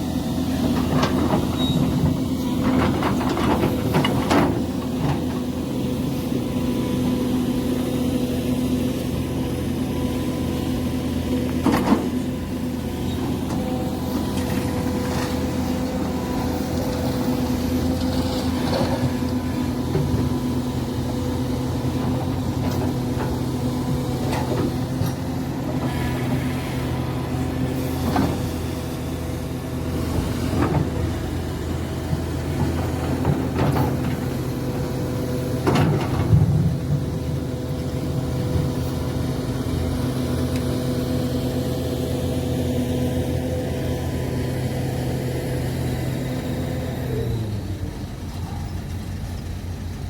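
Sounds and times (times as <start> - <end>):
excavator diesel engine running: 0.0 - 50.0.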